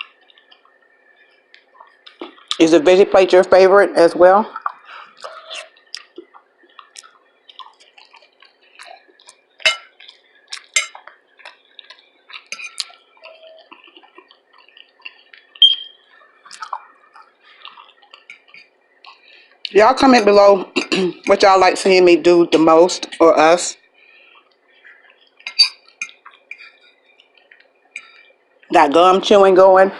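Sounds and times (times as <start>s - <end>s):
wet chewing and mouth clicks: 0.0s - 2.6s, 4.5s - 19.8s, 23.8s - 28.7s.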